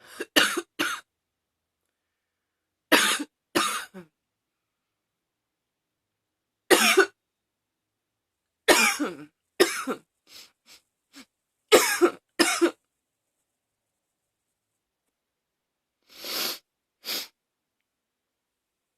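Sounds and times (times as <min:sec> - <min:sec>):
woman coughing: 0:00.1 - 0:01.0, 0:03.0 - 0:04.1, 0:06.7 - 0:07.2, 0:08.7 - 0:10.0, 0:11.7 - 0:12.8.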